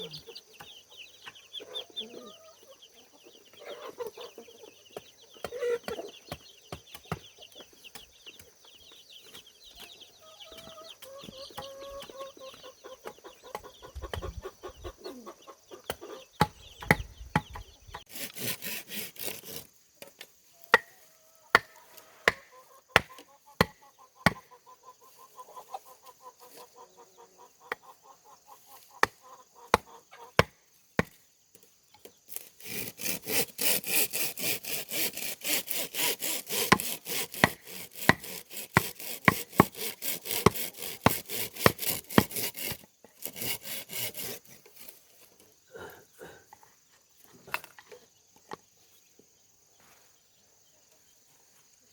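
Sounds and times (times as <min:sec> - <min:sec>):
hand saw cutting bamboo: 0:16.4 - 0:19.8, 0:21.5 - 0:24.4, 0:32.3 - 0:45.4.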